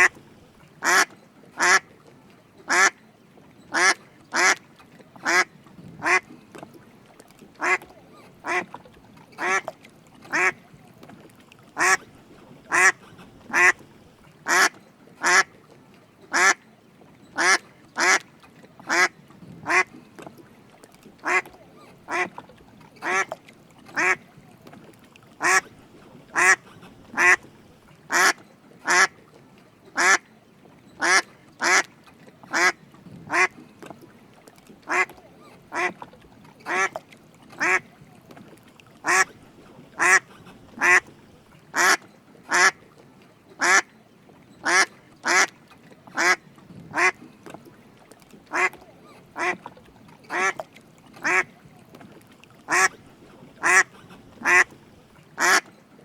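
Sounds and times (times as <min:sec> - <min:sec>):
duck quacking: 0:00.8 - 0:01.8, 0:02.7 - 0:03.0, 0:03.7 - 0:04.6, 0:07.6 - 0:08.7, 0:09.4 - 0:09.7, 0:10.3 - 0:10.6, 0:11.8 - 0:12.0, 0:12.7 - 0:13.8, 0:14.5 - 0:15.5, 0:17.4 - 0:18.2, 0:21.2 - 0:22.4, 0:24.0 - 0:24.2, 0:25.4 - 0:25.7, 0:26.3 - 0:27.4, 0:28.1 - 0:29.1, 0:31.0 - 0:31.9, 0:32.5 - 0:33.5, 0:34.9 - 0:35.1, 0:35.7 - 0:36.0, 0:36.7 - 0:36.9, 0:39.0 - 0:39.3, 0:40.0 - 0:41.1, 0:41.8 - 0:42.8, 0:44.6 - 0:45.5, 0:46.2 - 0:47.2, 0:48.5 - 0:48.8, 0:49.4 - 0:49.6, 0:51.2 - 0:51.5, 0:52.7 - 0:53.0, 0:53.6 - 0:54.7, 0:55.4 - 0:55.7.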